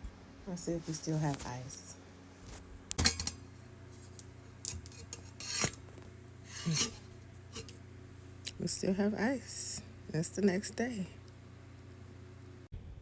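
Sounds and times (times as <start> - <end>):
lid cup and ice scraping: 4.7 - 7.8.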